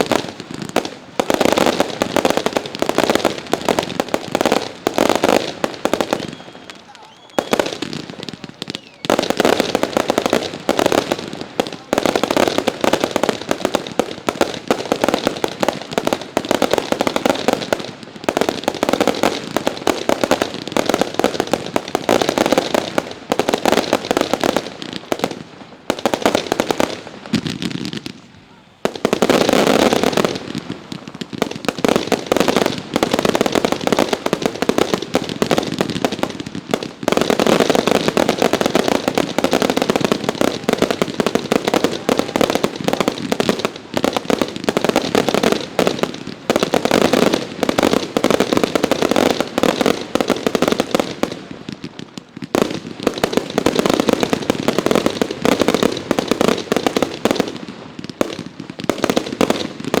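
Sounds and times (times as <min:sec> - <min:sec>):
fireworks bangs: 0:00.0 - 1:00.0
fireworks crackling: 0:00.0 - 1:00.0.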